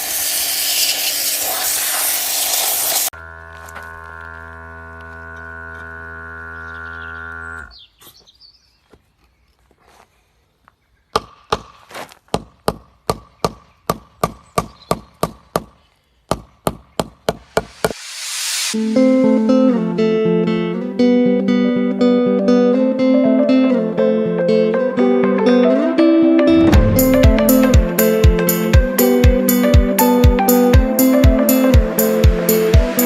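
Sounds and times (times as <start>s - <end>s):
steady pitched hum: 26.5s - 29.0s.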